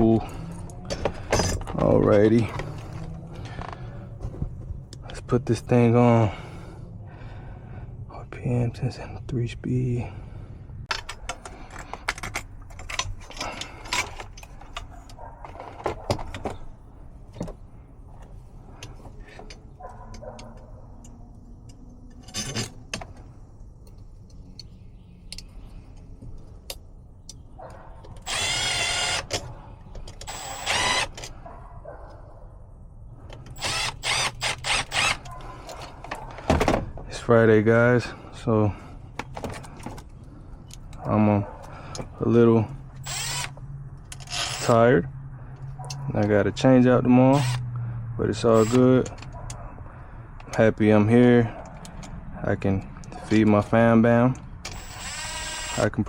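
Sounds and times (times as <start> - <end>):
power drill: 28.2 - 29.4, 30.2 - 31.2, 33.6 - 35.3, 43.0 - 43.5, 44.3 - 44.8, 47.3 - 47.6, 48.5 - 49.0, 54.7 - 56.0.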